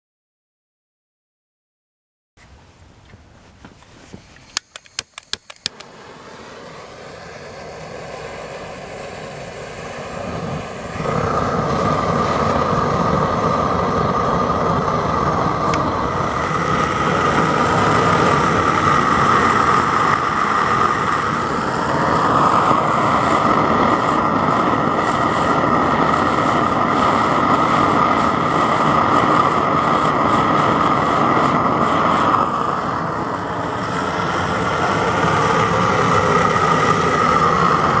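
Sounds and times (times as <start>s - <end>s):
gas forge burner rushing hiss: 3.8s - 38.0s
gas burner igniter clicks: 4.3s - 6.0s.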